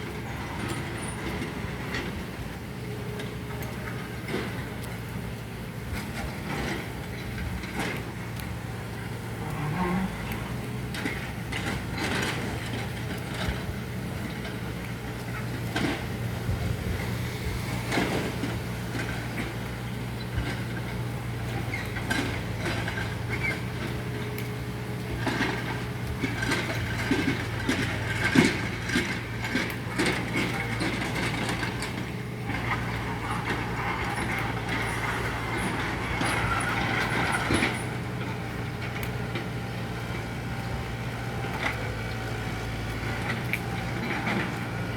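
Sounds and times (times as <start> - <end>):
vehicle engine running: 0.0 - 44.9.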